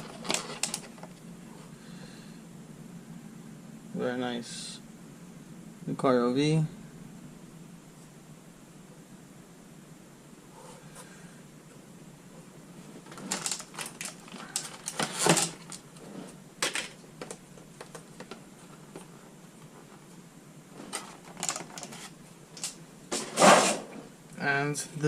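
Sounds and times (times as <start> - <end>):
packaging clicks: 0.0 - 1.0, 13.1 - 15.8, 20.9 - 22.8
packaging crinkling: 0.0 - 1.1, 13.0 - 15.9, 20.9 - 22.8.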